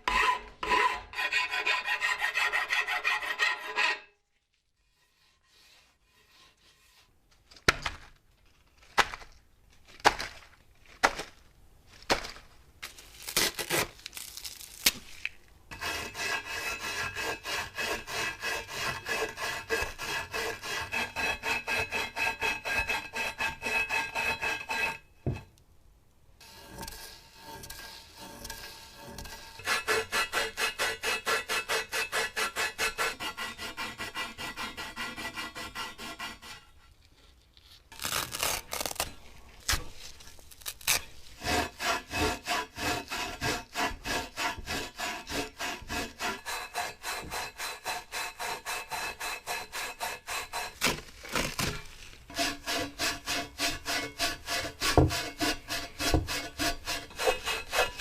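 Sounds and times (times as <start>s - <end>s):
hand tool rhythmic strokes: 0.0s - 4.1s, 15.7s - 25.0s, 26.4s - 36.7s, 40.8s - 51.0s, 52.3s - 58.0s.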